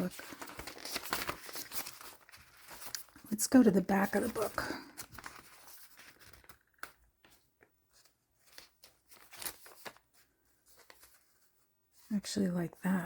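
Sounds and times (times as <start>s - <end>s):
paper rustling: 0.0s - 12.1s
soft clicks of paper: 0.2s - 3.2s, 4.9s - 11.2s.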